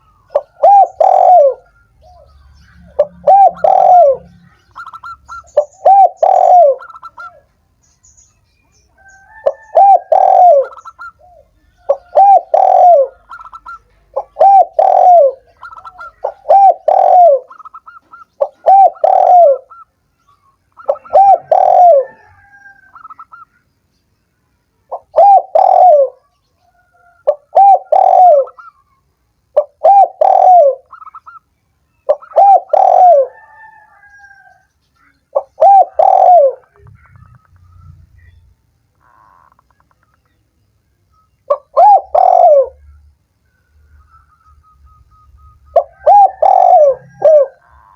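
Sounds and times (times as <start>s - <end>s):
dove cooing: 0.0s - 7.5s, 9.0s - 19.9s, 20.8s - 23.4s, 24.9s - 28.8s, 29.5s - 31.4s, 32.1s - 34.6s, 35.3s - 38.3s, 41.5s - 43.0s, 43.9s - 47.9s.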